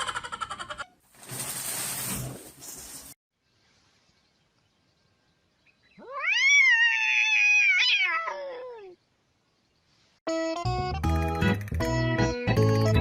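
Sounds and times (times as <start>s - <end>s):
cat meowing: 6.0s - 8.9s.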